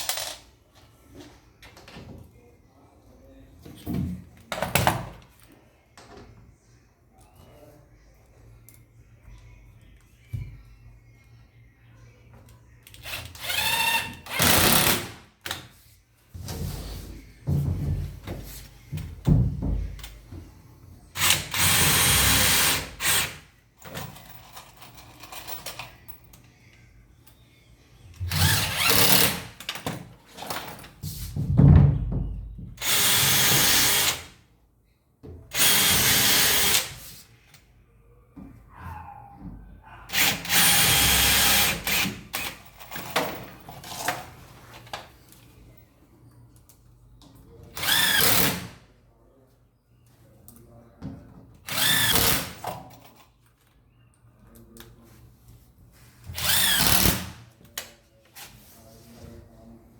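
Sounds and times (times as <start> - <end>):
power drill bursts: 13.4 - 15.1, 21.2 - 23.3, 28.3 - 29.4, 35.6 - 36.9, 40.1 - 42.5, 56.4 - 57.3.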